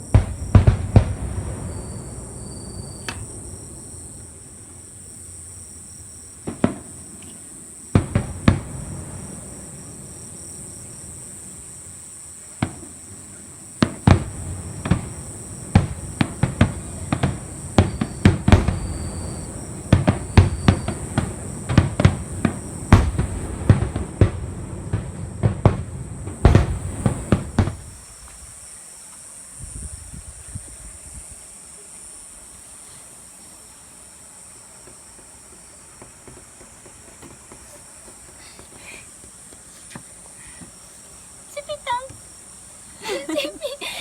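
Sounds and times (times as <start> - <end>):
distant muffled fireworks bangs: 0.0 - 28.4, 34.7 - 40.1.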